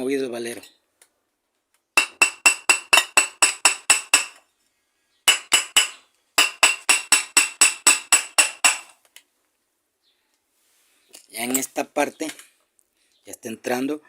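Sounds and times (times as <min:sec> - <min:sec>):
hammer tapping on metal: 0:02.0 - 0:04.4, 0:05.3 - 0:08.9.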